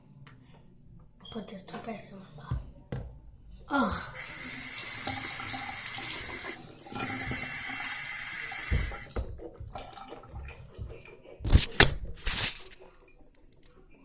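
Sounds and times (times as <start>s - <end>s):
tap water running into sink: 4.2s - 12.7s.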